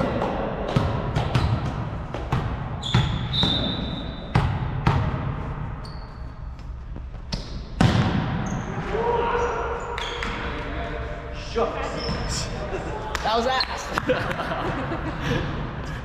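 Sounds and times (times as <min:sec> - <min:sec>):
sneakers squeaking on court: 0:01.2 - 0:05.0, 0:05.7 - 0:08.7, 0:11.9 - 0:12.5
volleyball smacks and bounces: 0:07.3 - 0:08.4.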